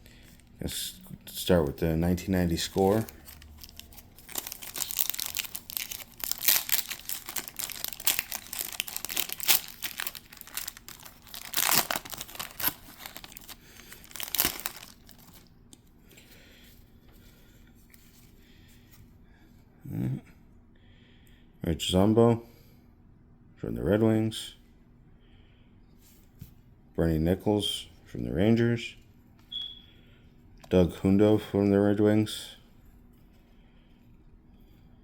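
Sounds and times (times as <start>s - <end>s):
wrapper crinkling as torn open: 2.5s - 15.5s.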